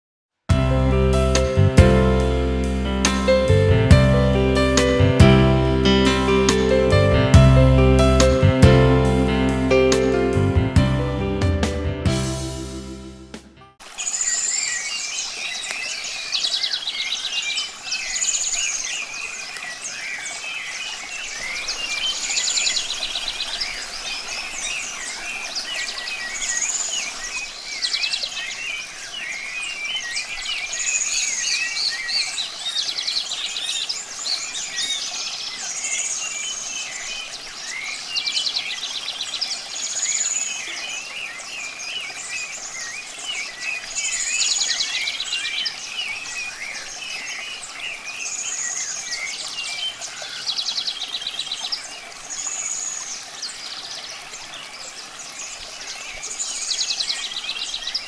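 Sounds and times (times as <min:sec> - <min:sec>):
running water hiss: 0:00.6 - 0:10.9, 0:13.8 - 0:58.0
songbirds singing and chirping: 0:13.9 - 0:58.0.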